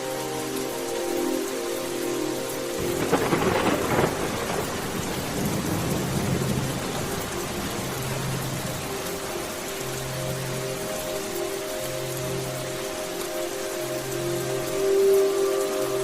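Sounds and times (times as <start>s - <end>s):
steady rain: 0.0s - 16.0s
thunder rumbling: 2.8s - 8.9s.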